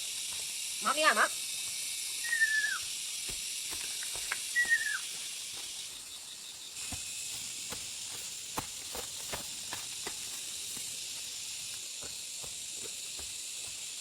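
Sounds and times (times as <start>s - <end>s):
high-pitched forest hiss: 0.0s - 14.0s
falling whistled call: 2.2s - 2.9s, 4.5s - 5.1s.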